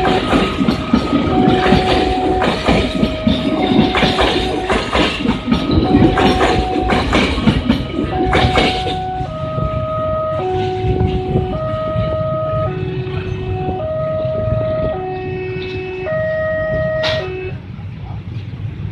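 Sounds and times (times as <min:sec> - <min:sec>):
train wheels clattering over rail joints: 0:00.0 - 0:09.3
two-tone electronic warning signal: 0:00.0 - 0:17.6.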